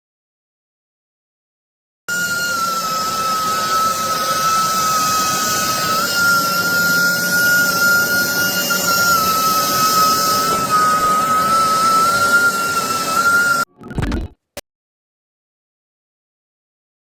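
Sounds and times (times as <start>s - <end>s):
carpet cleaner motor whining: 2.1s - 13.6s.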